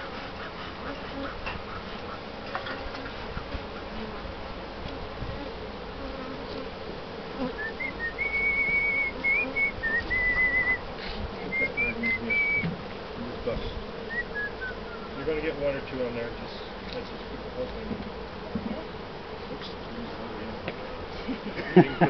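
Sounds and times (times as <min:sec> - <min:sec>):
bees buzzing: 0:00.0 - 0:22.0
person whistling held notes: 0:07.6 - 0:10.8, 0:11.4 - 0:12.7, 0:14.1 - 0:15.2.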